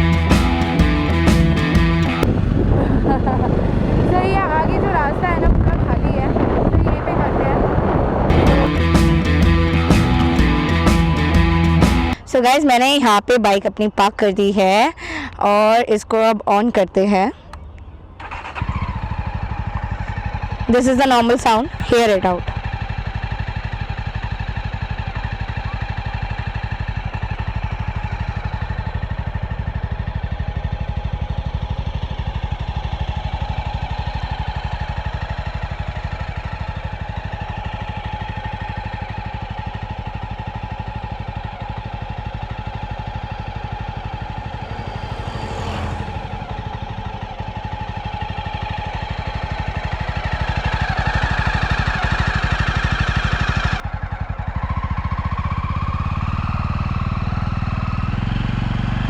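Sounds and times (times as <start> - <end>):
motorcycle engine idling: 17.4 - 59.0.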